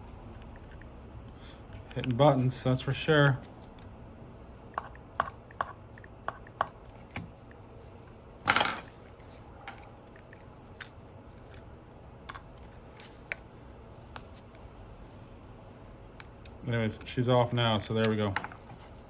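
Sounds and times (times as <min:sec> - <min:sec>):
small tools clicking and tapping: 0:12.3 - 0:13.4.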